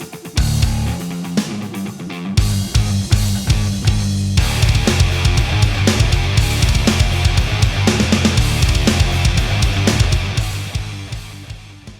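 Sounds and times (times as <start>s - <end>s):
bass guitar: 0.0s - 11.9s
distorted electric guitar: 0.0s - 11.9s
drums: 0.0s - 11.9s.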